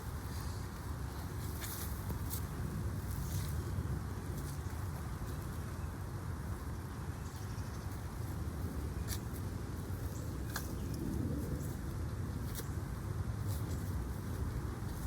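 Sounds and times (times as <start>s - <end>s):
low outdoor rumble: 0.0s - 15.0s.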